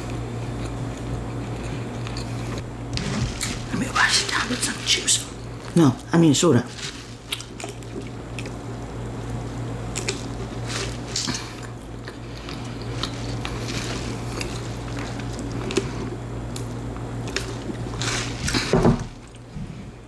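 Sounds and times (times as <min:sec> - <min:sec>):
low hum: 0:02.0 - 0:09.3.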